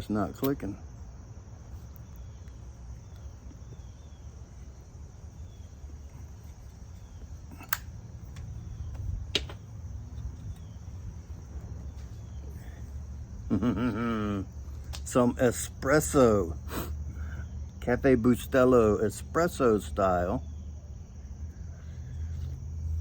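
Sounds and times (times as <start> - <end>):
steady low rumble: 0.0 - 23.0
sharp clicks: 0.4 - 0.7, 7.5 - 10.7.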